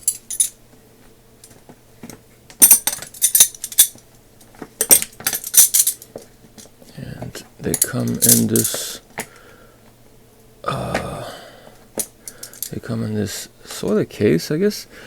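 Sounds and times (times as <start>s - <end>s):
metal wrenches clinking: 0.0s - 0.6s, 2.6s - 4.0s, 4.8s - 6.7s, 7.7s - 9.0s.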